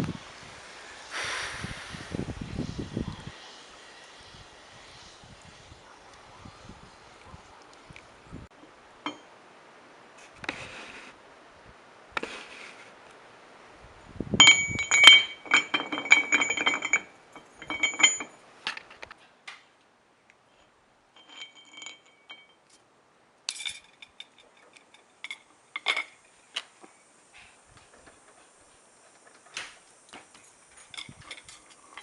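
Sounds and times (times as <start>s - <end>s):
metal clinking and ringing: 9.0s - 9.3s, 14.4s - 18.4s, 21.2s - 22.7s, 23.5s - 26.2s, 30.4s - 32.0s.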